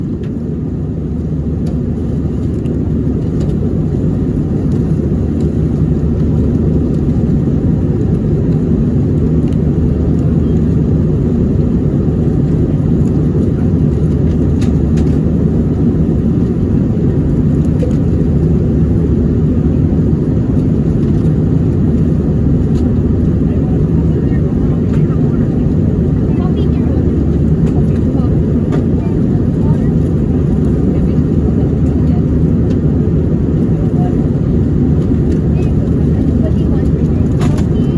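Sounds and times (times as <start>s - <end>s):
airliner cabin rumble: 0.0s - 37.9s.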